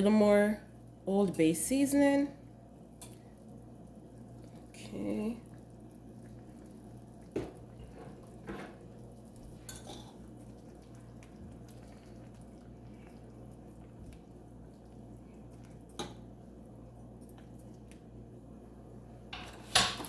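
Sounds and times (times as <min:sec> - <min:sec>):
low steady hum: 0:00.0 - 0:20.0
metal utensils clinking on pot: 0:09.6 - 0:10.2.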